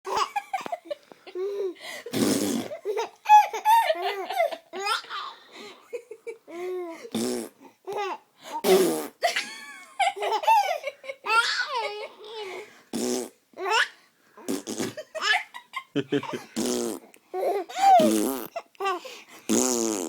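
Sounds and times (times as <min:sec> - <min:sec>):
spluttering fart noises: 0:02.1 - 0:02.8, 0:07.2 - 0:07.5, 0:08.6 - 0:09.2, 0:12.9 - 0:13.4, 0:14.5 - 0:15.0, 0:16.5 - 0:17.1, 0:18.0 - 0:18.5, 0:19.5 - 0:20.0
baby laughing: 0:02.7 - 0:05.4, 0:10.0 - 0:12.4.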